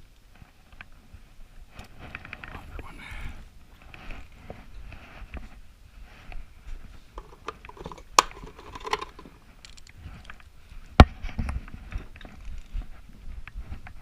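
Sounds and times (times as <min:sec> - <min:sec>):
metallic clicks and ratcheting: 0:07.2 - 0:10.0.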